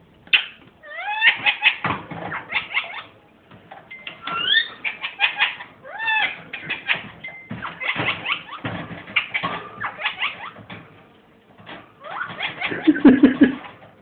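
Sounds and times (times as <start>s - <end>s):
parakeet chattering: 4.4s - 8.6s.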